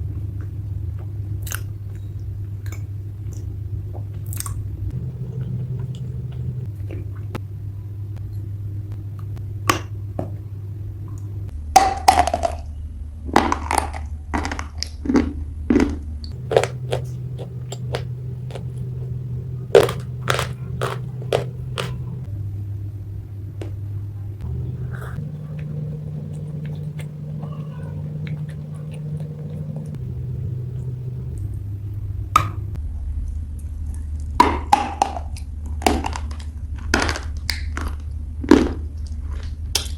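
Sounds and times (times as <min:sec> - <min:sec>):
low hum: 0:00.0 - 0:11.5, 0:16.3 - 0:32.8
clay being chewed with crunches: 0:15.8 - 0:22.3, 0:24.4 - 0:31.4.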